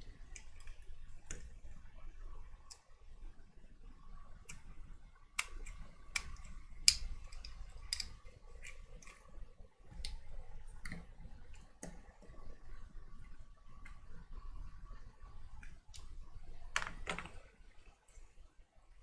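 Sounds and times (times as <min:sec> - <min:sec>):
plastic parts clicking: 0:05.4 - 0:09.2, 0:16.7 - 0:17.4.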